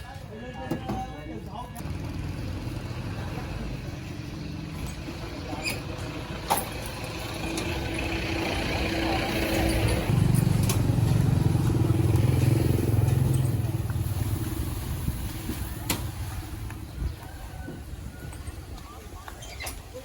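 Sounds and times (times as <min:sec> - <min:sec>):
vehicle engine passing by: 0:01.8 - 0:17.9.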